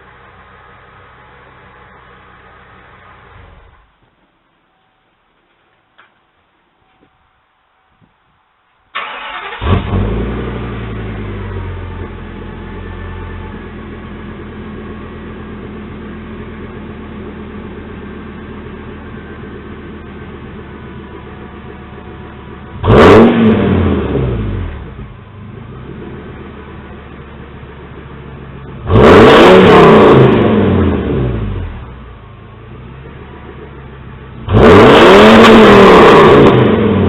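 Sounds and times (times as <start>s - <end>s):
engine starting: 8.9s - 10.6s
engine idling: 8.9s - 23.0s, 24.4s - 29.1s, 30.8s - 34.6s
engine revving: 9.0s - 13.0s, 22.7s - 26.1s, 28.8s - 32.0s, 34.3s - 37.0s.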